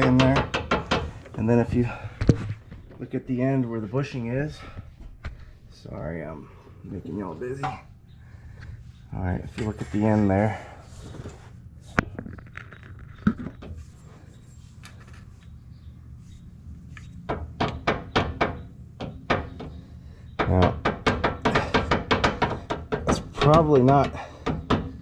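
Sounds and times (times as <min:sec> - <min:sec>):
worn bushing knocking: 0:00.0 - 0:03.0, 0:20.4 - 0:25.0.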